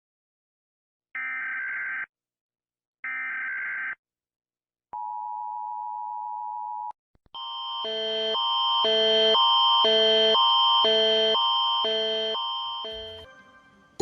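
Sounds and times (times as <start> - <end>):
multi-tone alarm: 1.2 - 2.1, 3.0 - 4.0, 7.4 - 13.6
steady attention tone: 12.8 - 13.5.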